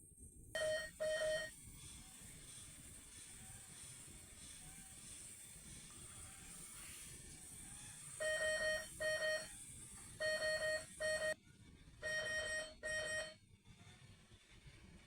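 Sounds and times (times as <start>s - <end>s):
electronic alarm double beeps: 0.6s - 1.5s, 8.2s - 9.5s, 10.2s - 11.4s.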